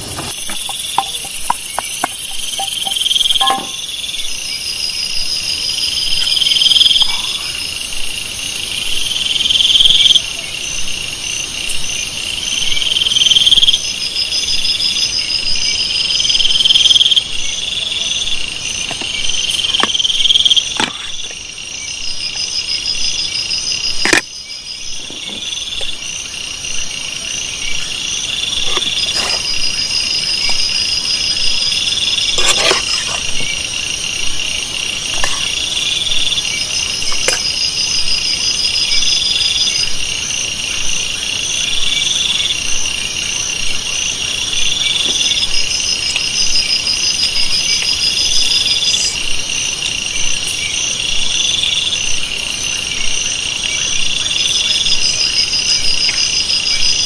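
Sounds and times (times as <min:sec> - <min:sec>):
crickets and insects chirring: 0:00.0 - 0:57.0.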